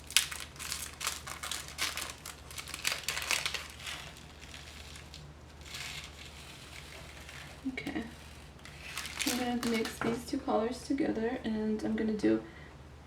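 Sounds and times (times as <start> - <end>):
plastic packaging crinkling: 0.0 - 10.3.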